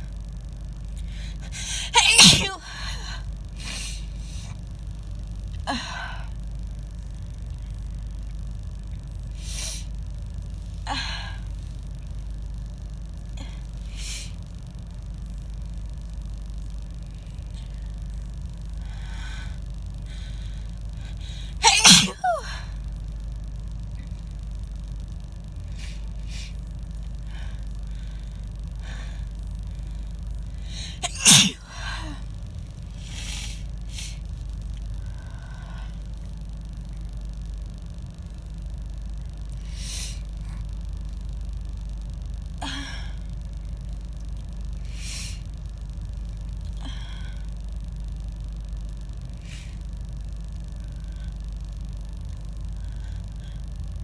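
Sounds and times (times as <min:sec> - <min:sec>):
steady low hum: 0:00.0 - 0:54.0
woman sneezing: 0:01.6 - 0:02.8, 0:21.6 - 0:22.6, 0:30.9 - 0:31.7.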